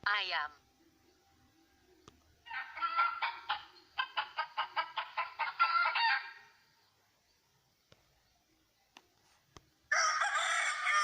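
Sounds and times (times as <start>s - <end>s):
hen cackling: 2.4s - 6.5s.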